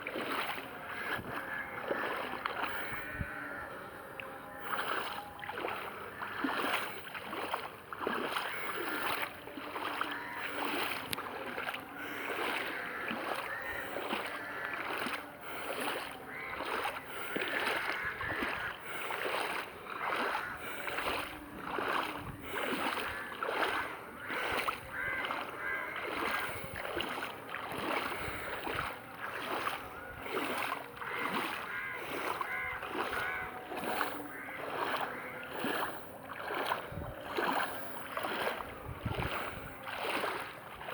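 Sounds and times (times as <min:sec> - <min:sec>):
footsteps wading through water: 0:00.0 - 0:40.9
water sloshing: 0:00.0 - 0:40.9.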